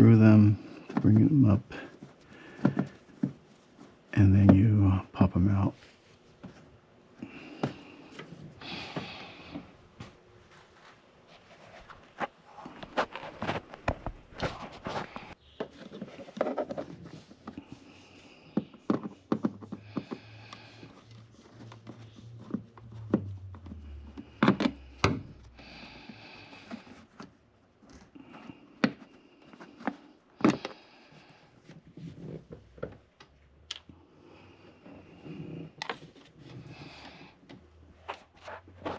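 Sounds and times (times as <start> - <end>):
plastic scraping: 11.5 - 25.2.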